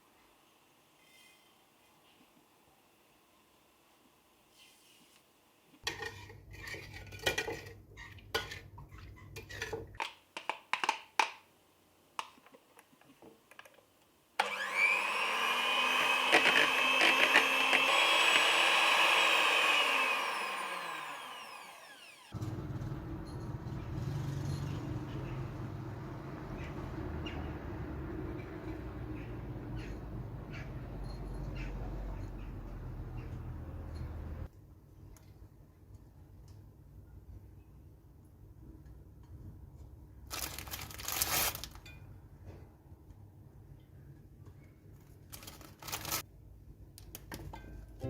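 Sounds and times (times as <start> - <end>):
small electric motor running: 14.4 - 22.4.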